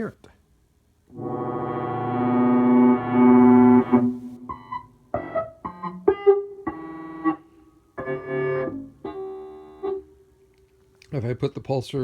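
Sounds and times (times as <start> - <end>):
synthesizer short notes: 3.3 - 4.5.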